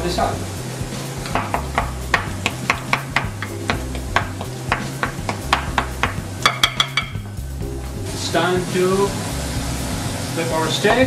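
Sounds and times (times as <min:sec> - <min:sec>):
potato masher knocking on pot: 0:01.2 - 0:07.2.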